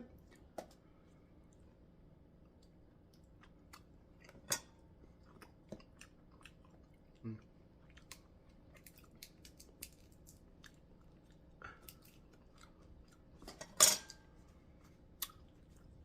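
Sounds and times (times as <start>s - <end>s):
utensils clinking on dishes: 13.4s - 14.2s
dishes clattering: 13.5s - 14.2s.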